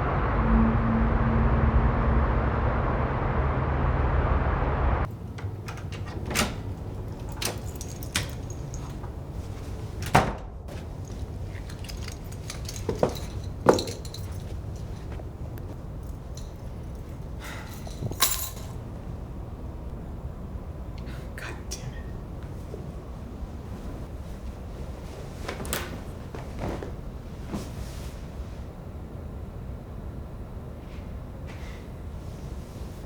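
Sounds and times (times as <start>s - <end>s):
low traffic-like noise: 0.0s - 33.0s
sharp clicks and clinks: 5.4s - 9.2s, 10.9s - 18.8s.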